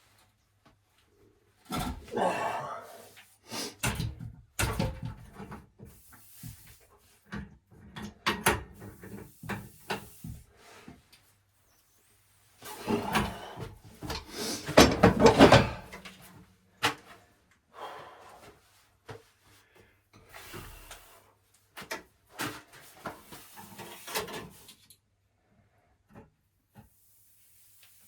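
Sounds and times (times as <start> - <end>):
plumbing clunks and scrapes: 12.6 - 16.2.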